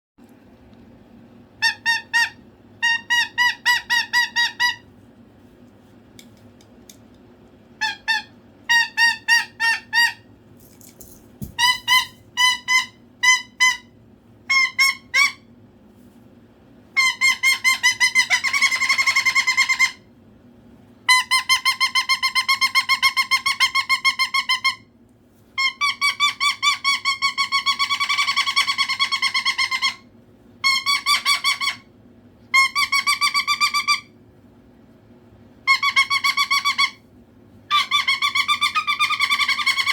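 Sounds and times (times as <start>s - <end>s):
cockatoo calling: 1.6s - 4.9s, 35.7s - 37.0s, 37.7s - 39.9s.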